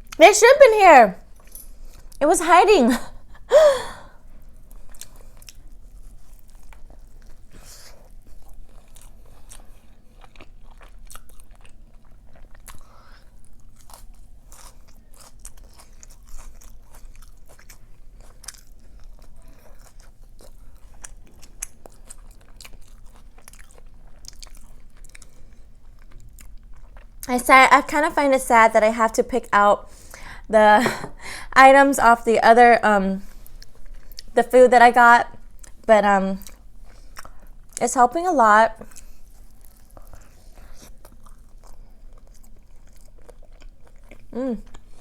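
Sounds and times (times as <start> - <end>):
chewing and crunching: 1.2 - 2.2, 4.2 - 27.3, 33.2 - 34.4, 35.3 - 37.8, 38.8 - 45.0.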